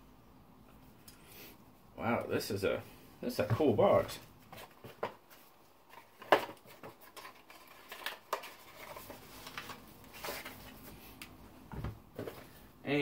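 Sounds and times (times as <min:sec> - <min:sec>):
packaging rustling: 0:04.6 - 0:11.0.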